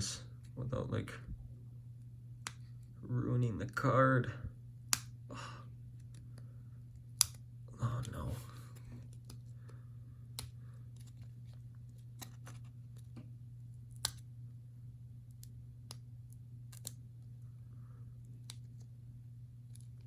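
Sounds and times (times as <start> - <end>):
low hum: 0.0 - 20.0
package clicks and snips: 4.9 - 5.2, 7.0 - 7.4, 10.3 - 13.2, 13.9 - 14.2, 16.7 - 17.0.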